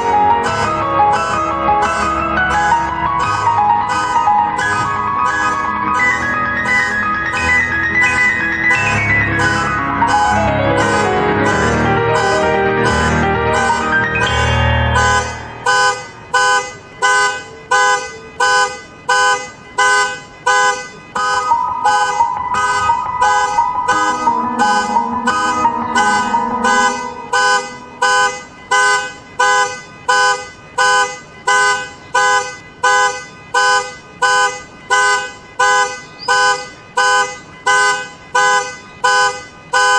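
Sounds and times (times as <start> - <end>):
piano chords: 0.0 - 17.1, 21.1 - 28.9
car horn alarm blasts: 0.0 - 39.9.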